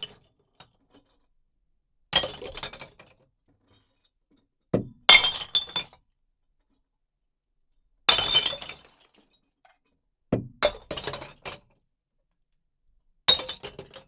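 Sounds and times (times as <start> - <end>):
glass bottles smashing: 8.1 - 9.1.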